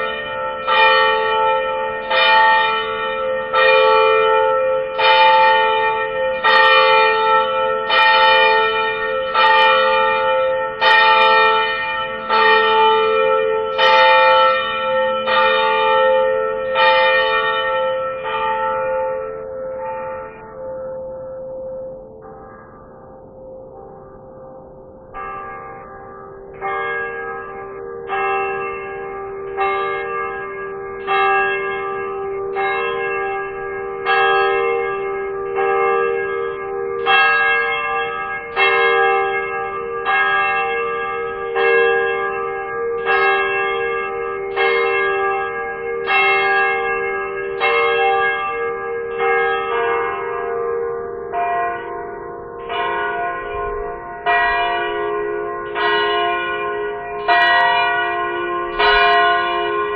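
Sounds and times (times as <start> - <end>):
tower bells ringing: 0.0 - 59.9.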